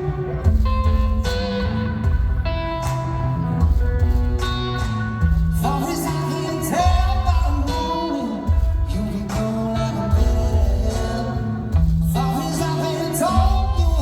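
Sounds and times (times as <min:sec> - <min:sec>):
rock band playing live: 0:00.0 - 0:14.0
person singing: 0:05.4 - 0:14.0.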